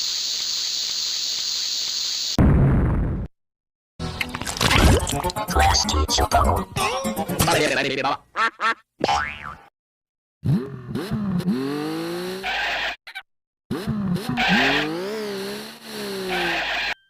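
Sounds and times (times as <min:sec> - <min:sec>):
cartoon engine revving: 0:10.4 - 0:17.0
cartoon tyre screech: 0:11.5 - 0:17.0.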